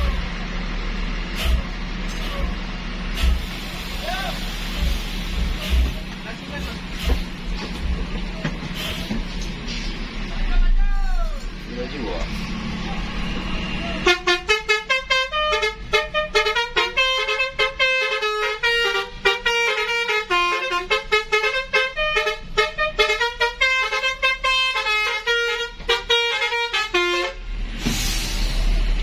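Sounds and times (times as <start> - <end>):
multi-tone air horns playing tune: 0.0 - 0.4, 14.0 - 27.4.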